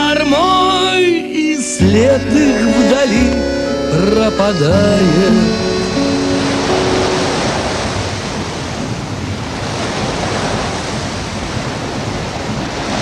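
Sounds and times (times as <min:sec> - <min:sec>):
waves washing in: 0:05.0 - 0:13.0.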